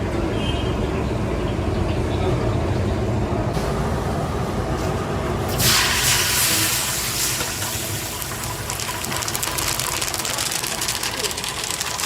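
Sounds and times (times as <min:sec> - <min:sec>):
loud hiss with crackling: 0:05.5 - 0:12.0.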